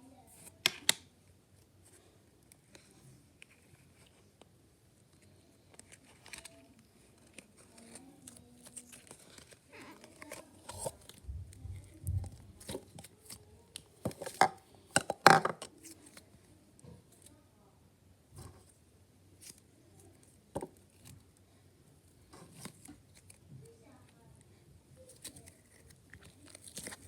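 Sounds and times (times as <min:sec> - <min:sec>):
packaging crinkling and tearing: 0:05.7 - 0:11.2, 0:25.0 - 0:27.0.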